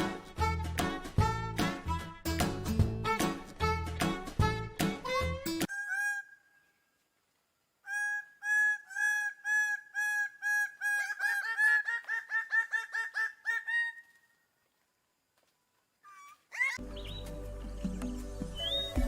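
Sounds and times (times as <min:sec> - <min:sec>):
bird calling short notes: 0:05.7 - 0:06.9.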